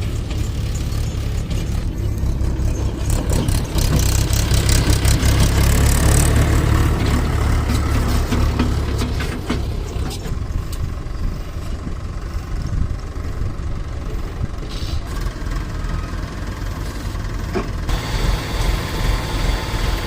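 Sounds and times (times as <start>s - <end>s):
tractor diesel engine running: 0.0s - 20.0s.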